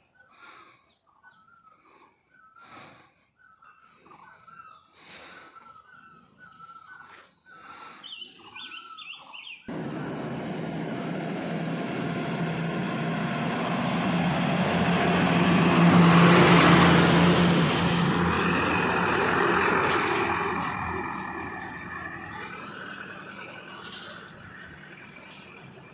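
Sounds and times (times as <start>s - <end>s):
small birds chirping: 0.0s - 11.0s, 21.1s - 25.9s
vehicle passing on road: 9.7s - 25.9s.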